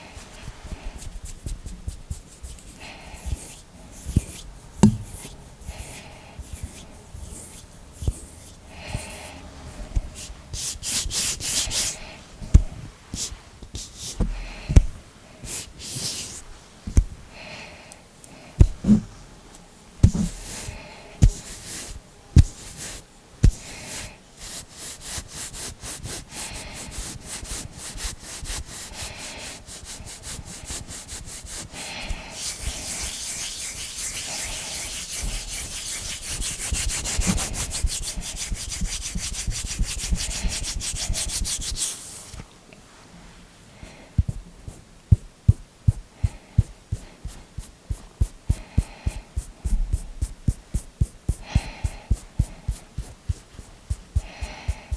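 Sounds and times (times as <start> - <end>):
hands rubbing together: 10.0 - 12.0, 24.4 - 42.4, 45.5 - 54.9.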